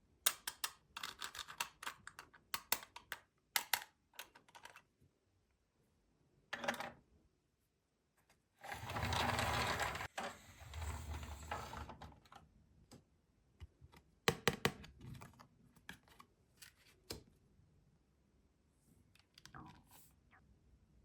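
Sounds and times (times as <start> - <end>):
plastic pieces clicking and tapping: 0.3 - 4.9.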